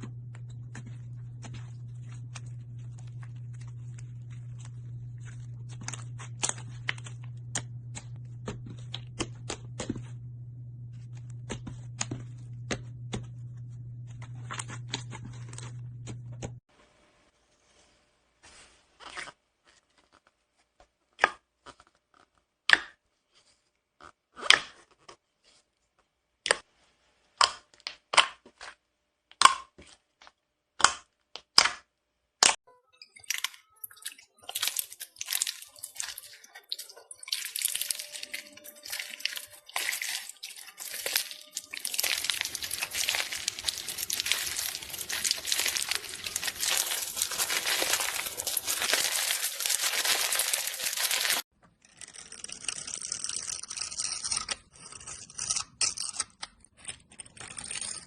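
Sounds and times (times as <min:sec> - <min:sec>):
slime crackling: 0:34.4 - 0:51.4.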